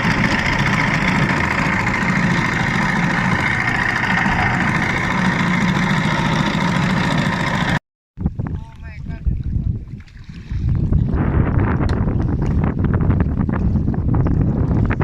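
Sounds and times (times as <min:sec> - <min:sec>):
engine running steadily: 0:00.0 - 0:07.8.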